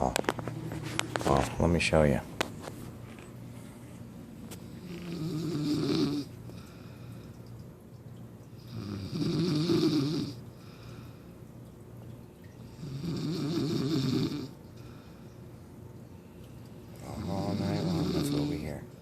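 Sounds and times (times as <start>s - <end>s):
woman snoring: 4.9s - 6.3s, 8.7s - 10.4s, 12.8s - 14.5s, 17.2s - 18.5s.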